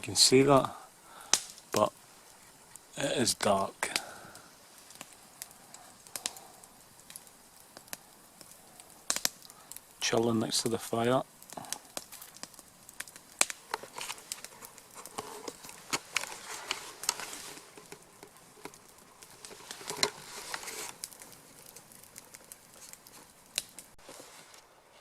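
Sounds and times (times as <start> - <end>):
burning wood hissing: 0.0 - 25.0
campfire crackling: 0.0 - 25.0.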